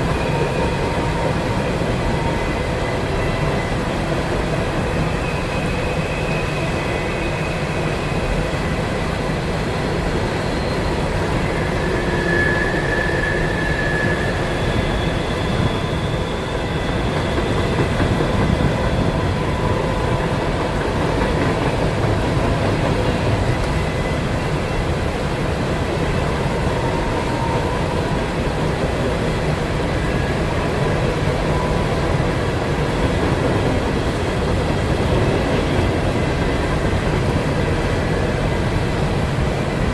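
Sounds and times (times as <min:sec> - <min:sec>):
train rumbling past: 0:00.0 - 0:39.9
faint high squealing: 0:09.8 - 0:24.8.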